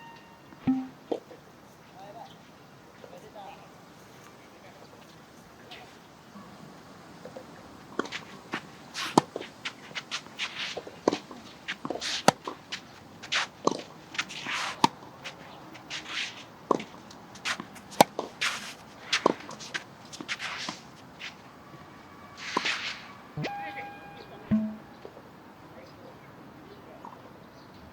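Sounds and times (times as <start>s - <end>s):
tennis ball bouncing: 0.6s - 1.0s, 24.4s - 25.0s
tennis racket striking ball: 0.6s - 1.0s, 24.4s - 25.0s
shoe scuffs and footsteps on court: 8.0s - 21.5s.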